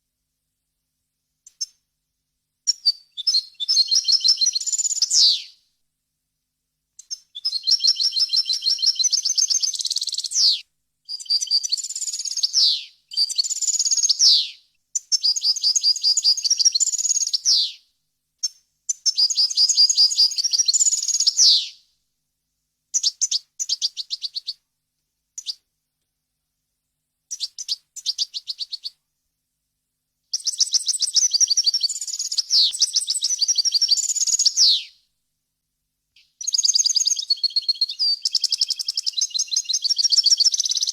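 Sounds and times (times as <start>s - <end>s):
finch singing: 2.7s - 5.5s, 7.4s - 17.8s, 19.1s - 21.8s, 30.4s - 34.9s, 36.4s - 40.9s.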